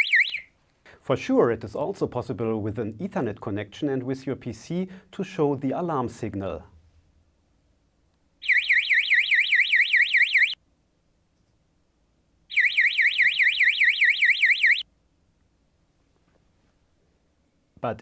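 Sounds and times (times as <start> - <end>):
high-pitched warbling alarm: 0.0 - 0.5, 8.4 - 10.6, 12.5 - 14.8.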